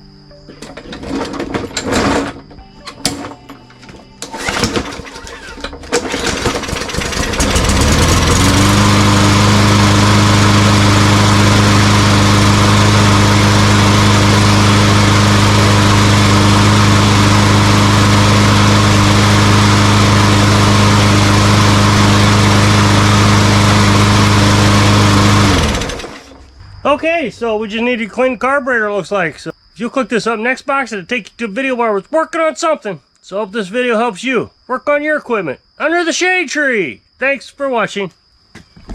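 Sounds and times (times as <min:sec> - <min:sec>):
lawn mower engine running: 0:00.0 - 0:27.9.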